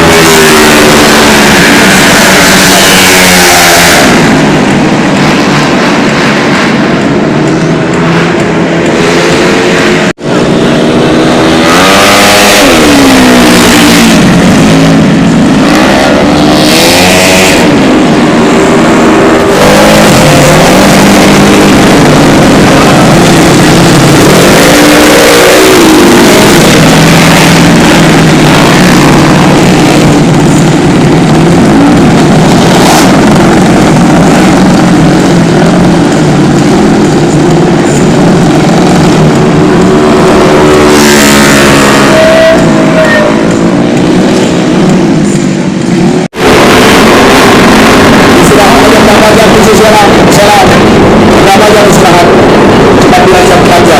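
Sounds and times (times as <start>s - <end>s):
scooter engine revving: 0.0s - 53.9s.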